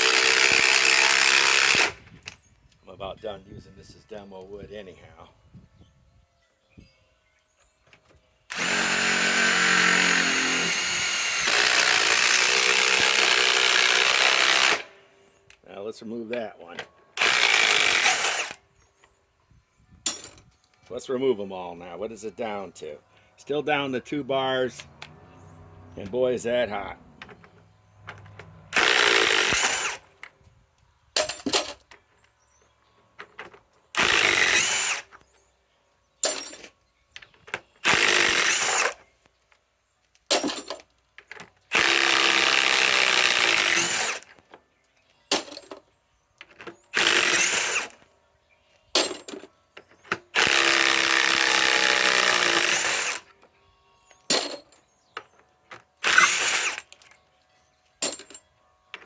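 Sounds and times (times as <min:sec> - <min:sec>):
impact wrench hammering: 0:28.1 - 0:30.0, 0:58.0 - 0:58.4.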